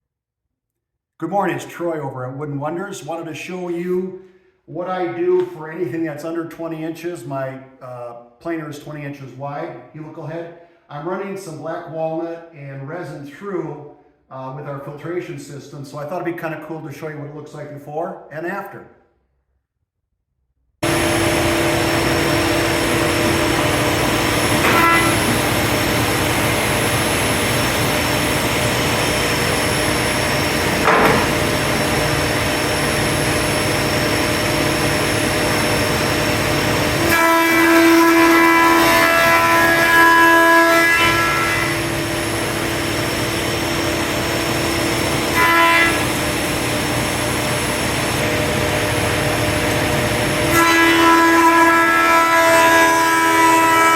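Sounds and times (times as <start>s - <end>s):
planer machine drone: 20.8s - 50.7s.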